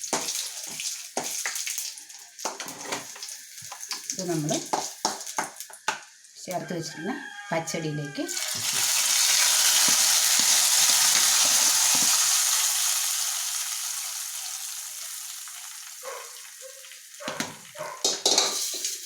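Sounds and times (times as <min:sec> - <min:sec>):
hot oil sizzling: 0:00.0 - 0:07.5, 0:08.3 - 0:19.0
knocks and scrapes: 0:02.5 - 0:03.1.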